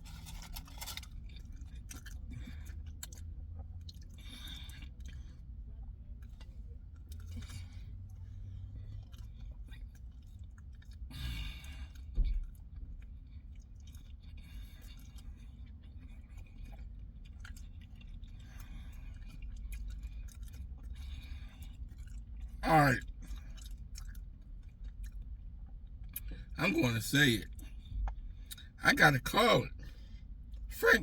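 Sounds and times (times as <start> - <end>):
person chewing: 0.0 - 5.3, 13.4 - 22.2
steady low hum: 22.6 - 31.0.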